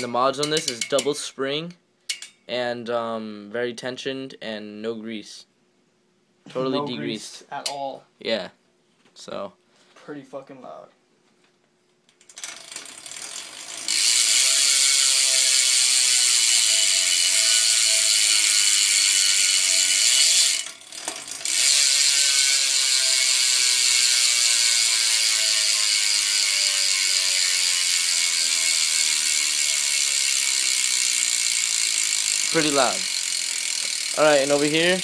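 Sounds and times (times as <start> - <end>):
bicycle hub freewheel clicking buzz: 12.2 - 35.0.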